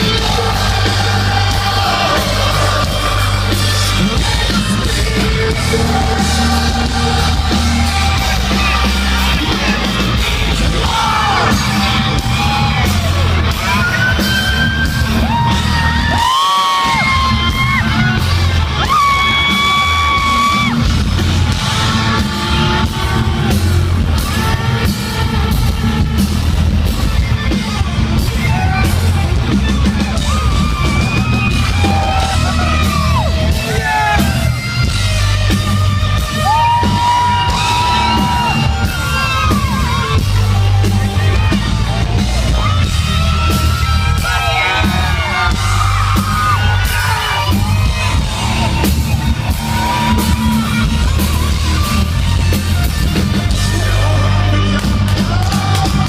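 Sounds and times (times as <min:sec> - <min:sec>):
person singing: 0:00.0 - 0:12.9
live heavy metal band: 0:00.0 - 0:56.0.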